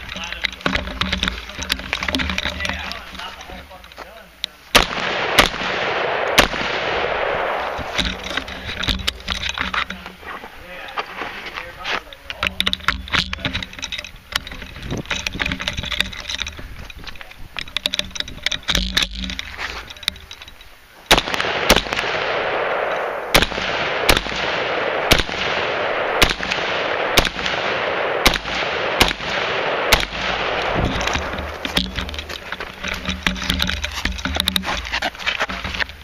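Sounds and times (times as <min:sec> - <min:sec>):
quiet sharp cracks: 0:00.0 - 0:11.0, 0:21.1 - 0:36.0
rifle gunshots: 0:04.7 - 0:08.8, 0:21.1 - 0:31.7.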